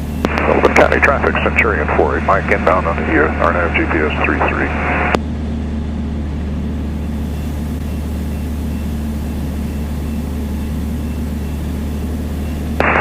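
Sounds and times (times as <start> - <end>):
airplane engine droning: 0.0 - 13.0
radio click: 0.2 - 0.8, 12.8 - 13.0.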